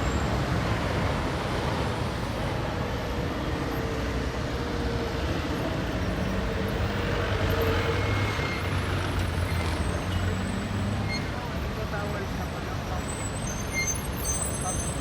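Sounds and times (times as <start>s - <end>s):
traffic rumble: 0.0s - 15.0s.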